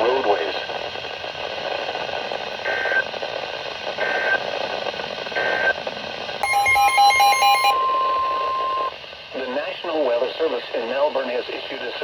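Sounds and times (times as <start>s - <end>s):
alert attention tone: 6.4s - 8.9s
electronic data bursts: 6.4s - 8.9s
rapid beeping: 6.4s - 8.9s.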